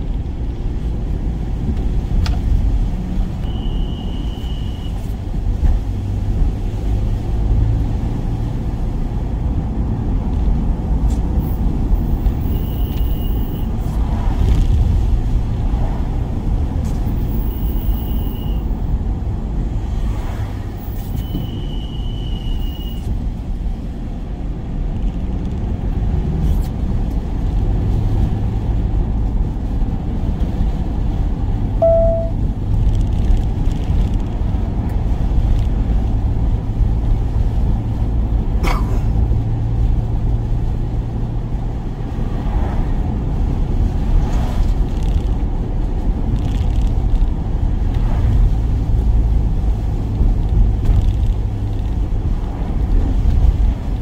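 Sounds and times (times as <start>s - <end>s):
van engine and road noise: 0.0s - 54.0s
brief tone: 3.4s - 5.0s, 17.7s - 18.7s, 21.2s - 23.0s, 31.8s - 32.4s.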